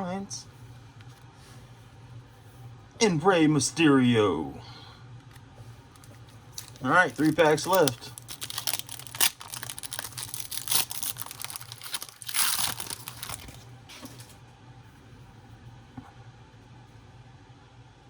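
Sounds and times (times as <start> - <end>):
plastic wrapper crinkling and tearing: 5.9 - 14.2.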